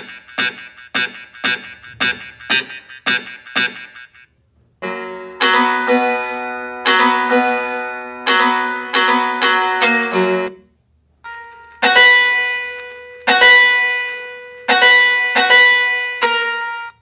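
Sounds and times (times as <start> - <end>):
keyboard music: 0.0 - 4.2, 11.2 - 17.0.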